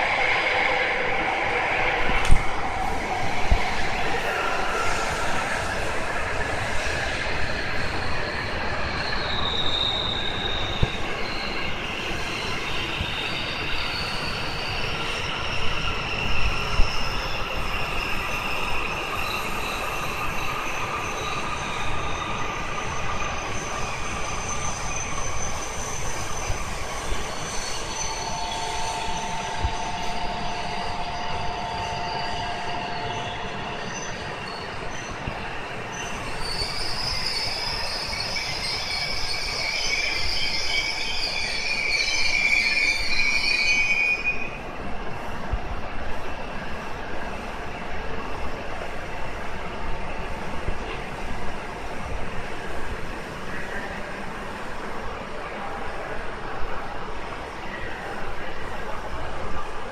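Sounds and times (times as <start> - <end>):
train rumble: 0.0 - 42.0
high squealing wheels: 0.0 - 59.9.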